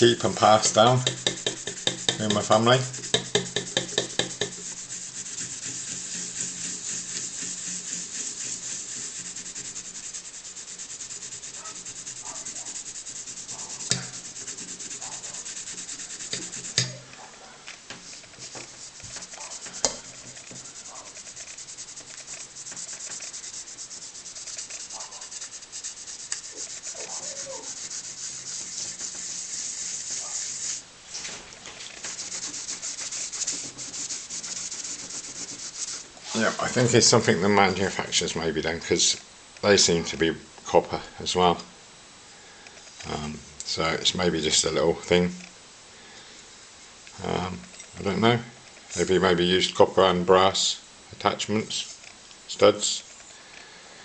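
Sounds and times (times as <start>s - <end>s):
rubbing metal lamp by hand: 0.0s - 17.0s, 18.1s - 30.8s, 32.0s - 37.2s.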